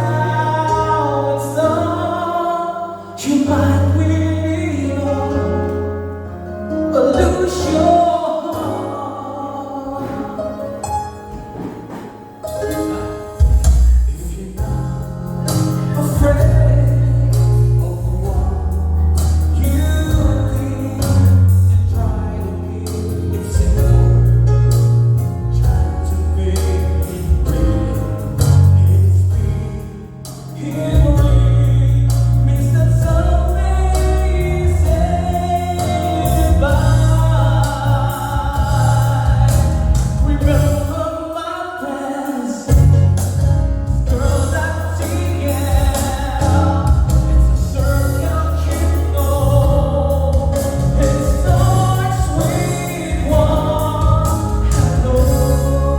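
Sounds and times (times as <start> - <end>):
song with singing: 0.0 - 6.0, 6.9 - 24.3, 25.5 - 55.9
heavy pulsing bass line: 30.9 - 41.0, 42.7 - 55.9.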